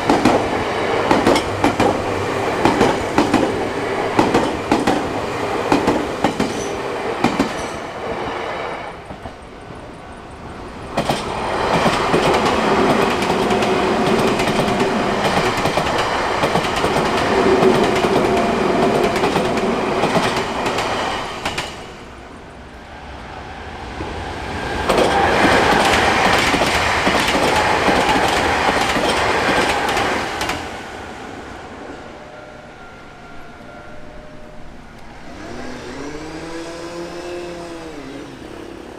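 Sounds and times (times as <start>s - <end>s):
train wheels clattering over rail joints: 0.0s - 8.2s, 8.9s - 22.1s, 24.8s - 30.8s.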